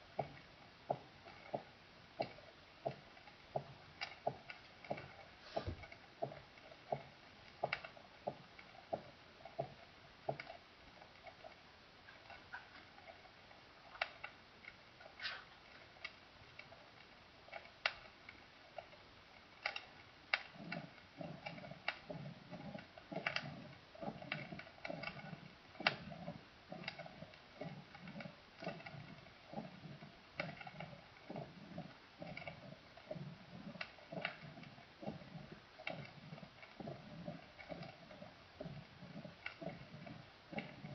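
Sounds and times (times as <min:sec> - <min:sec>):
heartbeat through stethoscope: 0:00.0 - 0:10.6, 0:20.4 - 0:40.9.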